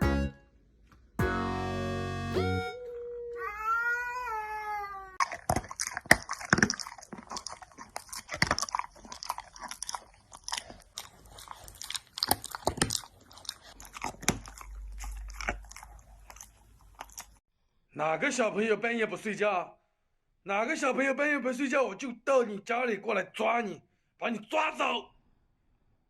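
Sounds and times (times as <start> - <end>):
cat meowing: 2.8 - 5.2
crunchy chewing of dry food: 5.2 - 17.4.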